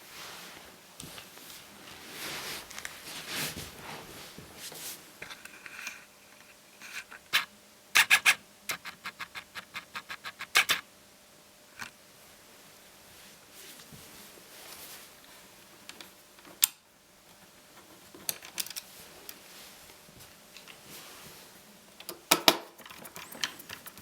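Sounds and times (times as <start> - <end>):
hands rubbing and scraping: 0.2 - 5.0.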